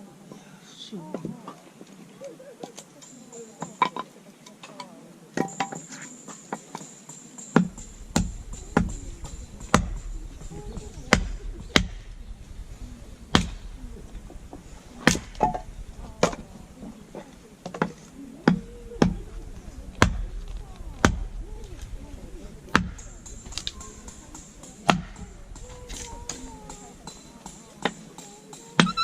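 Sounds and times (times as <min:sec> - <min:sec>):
firewood chopping strikes: 0:07.6 - 0:16.5, 0:17.6 - 0:26.6.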